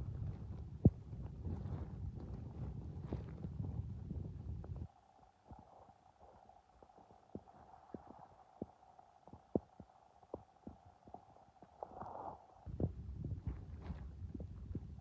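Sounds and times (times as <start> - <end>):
steady low hum: 0.0 - 15.0
stomach clicking pops: 5.5 - 15.0.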